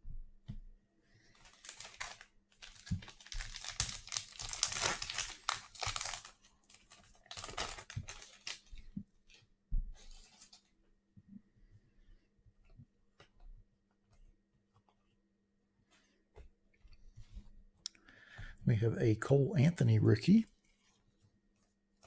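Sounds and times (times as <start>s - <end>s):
foil wrapper tearing and crinkling: 1.4s - 8.7s.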